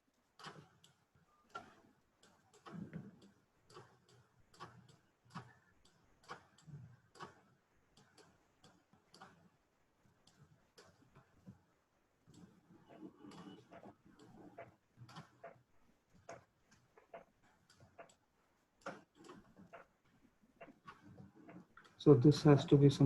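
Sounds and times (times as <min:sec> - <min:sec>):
computer mouse clicks: 0:00.4 - 0:09.5, 0:12.3 - 0:15.6, 0:18.8 - 0:19.9.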